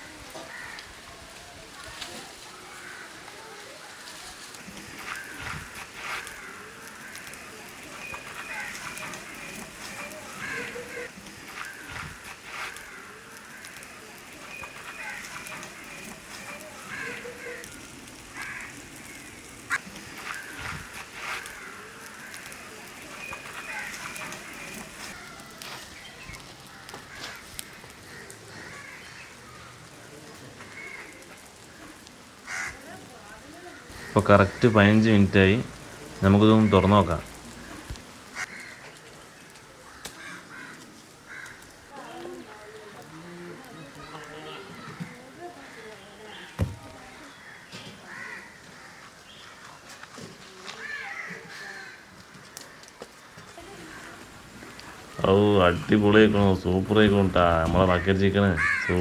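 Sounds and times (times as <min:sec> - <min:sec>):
crows cawing: 0:00.4 - 0:01.0, 0:02.5 - 0:59.0
faint clicks: 0:37.2 - 0:42.4.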